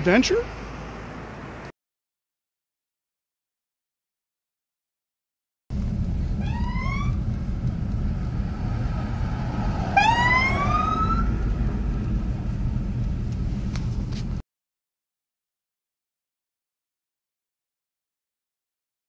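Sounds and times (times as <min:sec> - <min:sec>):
road traffic rumble: 0:00.0 - 0:01.7, 0:05.7 - 0:14.4
wind: 0:00.0 - 0:01.7, 0:05.7 - 0:14.4
short rising whoops: 0:08.6 - 0:11.4.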